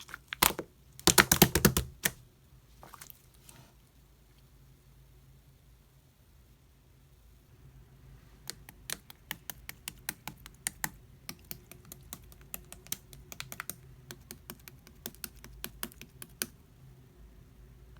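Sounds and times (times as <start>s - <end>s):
slime clicking and popping: 0.0s - 2.2s, 8.5s - 16.5s.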